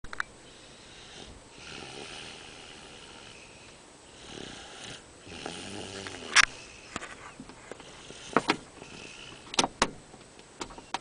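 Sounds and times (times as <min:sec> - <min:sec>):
toddler snoring: 0:00.5 - 0:06.9, 0:07.8 - 0:09.5.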